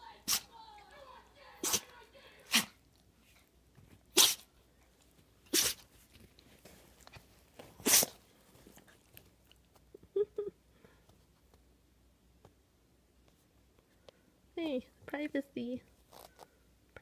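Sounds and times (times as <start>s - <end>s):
dog sneezing: 0.2s - 0.5s, 1.6s - 2.8s, 4.1s - 4.5s, 5.5s - 5.9s, 7.8s - 8.2s.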